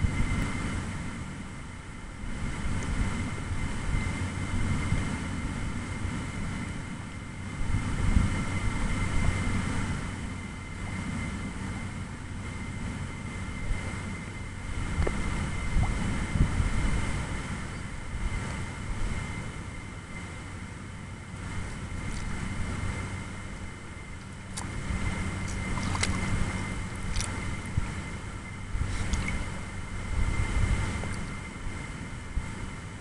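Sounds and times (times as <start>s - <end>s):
wind buffeting microphone: 0.0s - 33.0s
faint steady high tone: 8.1s - 33.0s.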